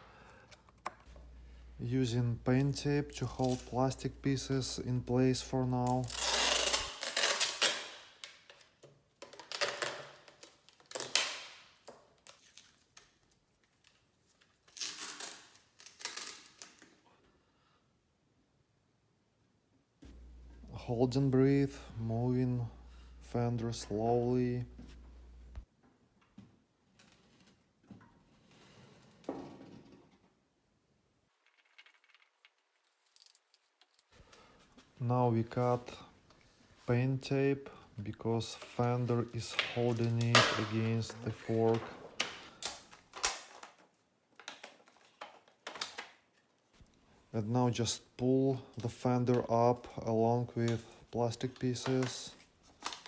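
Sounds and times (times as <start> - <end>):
masking tape pulled and torn: 2.5 - 4.0, 5.8 - 17.0, 39.5 - 46.4.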